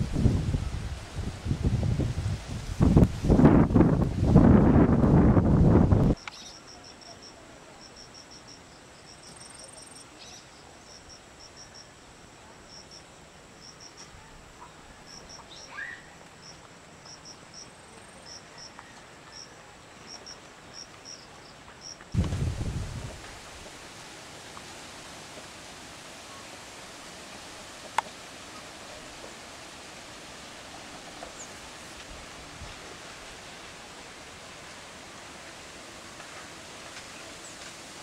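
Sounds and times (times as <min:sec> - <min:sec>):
insect chirping: 0:06.1 - 0:14.1, 0:15.0 - 0:22.5.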